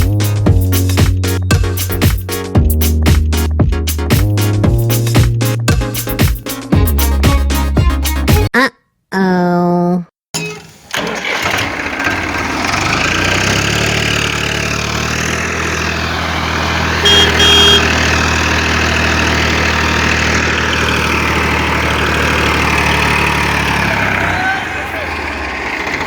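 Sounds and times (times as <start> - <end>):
vehicle engine idling: 11.0 - 26.0
short high beeps: 17.0 - 17.9.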